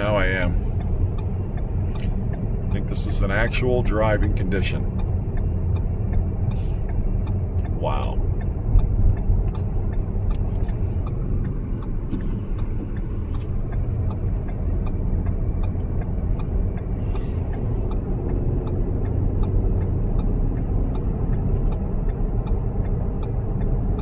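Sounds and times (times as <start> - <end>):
car driving rumble: 0.0 - 24.0
faint regular ticking: 0.0 - 24.0.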